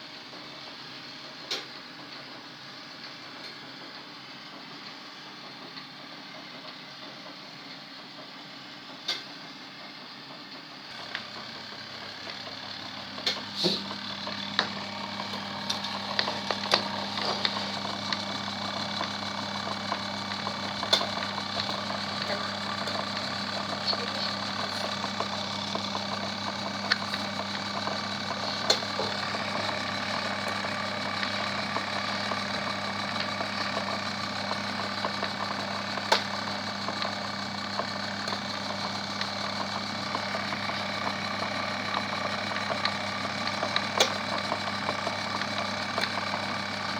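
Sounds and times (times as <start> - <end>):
washing machine motor hum: 10.3 - 46.9.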